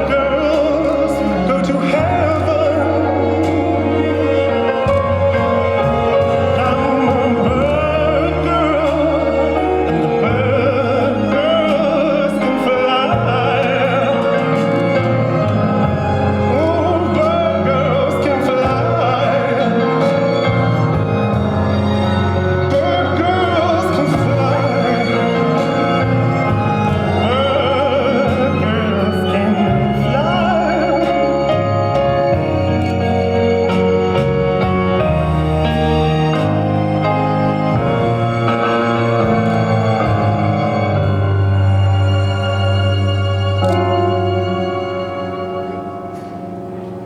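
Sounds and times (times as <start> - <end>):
operatic singing voice: 0.0 - 46.0
sustained low bass notes: 0.0 - 47.0.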